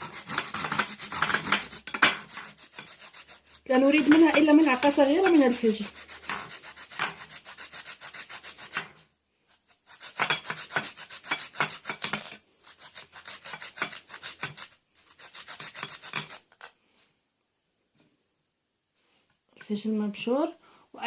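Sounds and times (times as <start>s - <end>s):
grater rasping: 0.0s - 8.8s, 9.5s - 16.7s.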